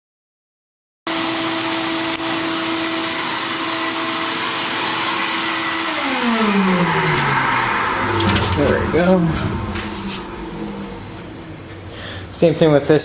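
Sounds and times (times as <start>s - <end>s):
vacuum motor humming and hissing: 1.1s - 8.9s.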